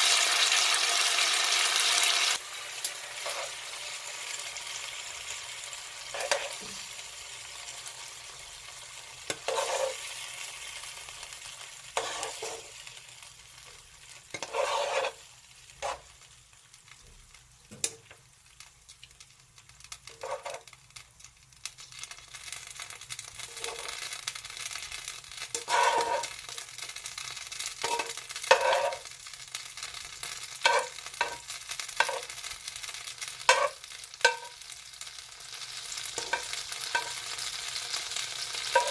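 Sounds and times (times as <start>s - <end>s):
meat sizzling in a pan: 0.0s - 38.9s
utensil scraping a pan: 3.2s - 3.8s, 6.1s - 6.9s, 9.2s - 10.2s, 12.0s - 12.8s, 14.3s - 15.2s, 15.8s - 16.1s, 20.1s - 20.7s, 23.5s - 23.9s, 25.5s - 26.4s, 27.8s - 29.1s, 30.6s - 31.4s, 32.0s - 32.3s, 33.5s - 34.5s, 36.2s - 37.3s, 38.5s - 38.9s.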